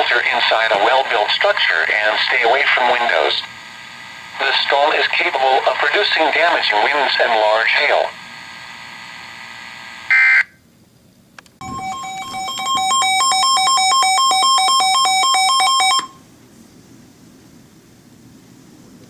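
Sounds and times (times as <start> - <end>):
warbling two-tone ring: 11.6 - 16.2.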